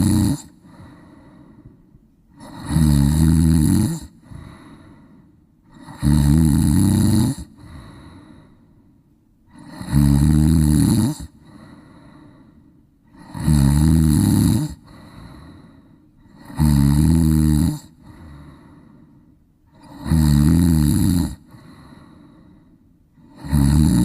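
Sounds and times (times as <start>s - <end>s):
dog snoring: 0.0s - 1.4s, 2.3s - 5.1s, 5.7s - 8.5s, 9.5s - 12.4s, 13.1s - 18.8s, 19.7s - 22.3s, 23.2s - 24.0s.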